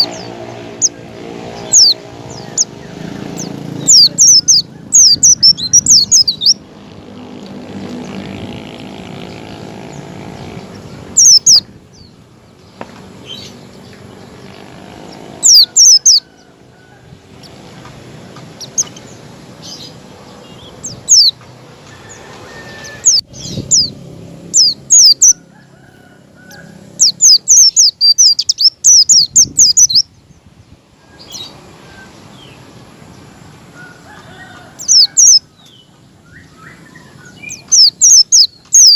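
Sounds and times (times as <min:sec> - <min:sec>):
bird giving high chirps: 0:00.0 - 0:06.7, 0:09.2 - 0:12.6, 0:13.2 - 0:17.6, 0:18.5 - 0:25.5, 0:26.5 - 0:30.3, 0:34.8 - 0:38.9.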